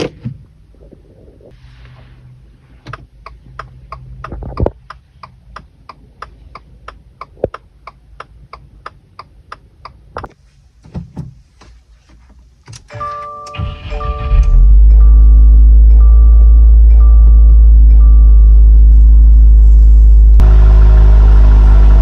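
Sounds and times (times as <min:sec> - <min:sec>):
turn signal clicking: 0:02.9 - 0:10.3.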